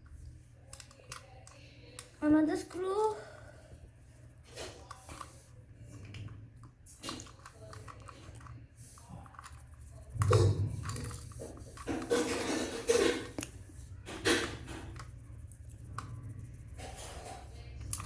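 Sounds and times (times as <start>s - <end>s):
plastic toy parts clicking and rattling: 0.6s - 3.1s, 4.5s - 13.5s, 17.8s - 18.0s.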